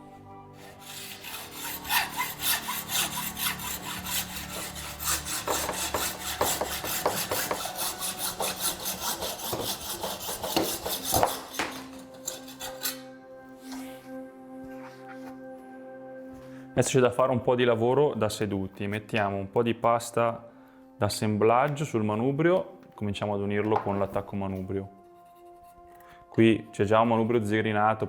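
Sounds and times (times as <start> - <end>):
hand saw cutting through tube: 0.6 - 14.1.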